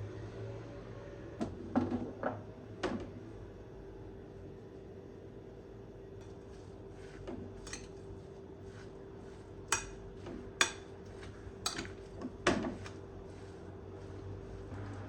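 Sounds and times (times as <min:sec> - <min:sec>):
steady low hum: 0:03.6 - 0:15.0
kitchen items clicking and clinking: 0:11.7 - 0:12.0.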